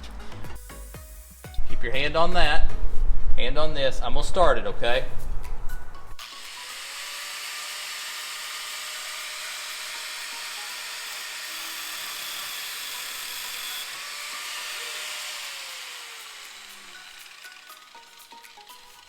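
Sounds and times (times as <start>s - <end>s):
power tool cutting steel rod: 6.2s - 19.0s.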